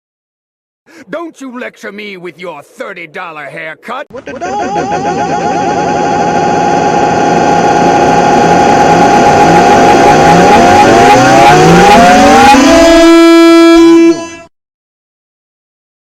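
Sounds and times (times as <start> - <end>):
air horn blast: 4.6 - 14.5
race car engine revving: 4.8 - 14.3.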